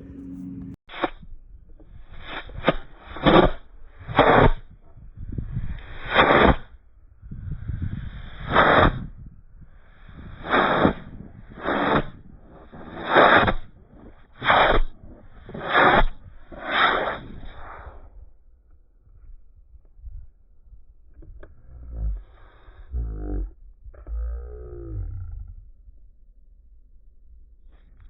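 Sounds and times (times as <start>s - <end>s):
rocket motor whooshing puffs: 1.9s - 6.8s, 7.4s - 9.2s, 9.8s - 18.2s.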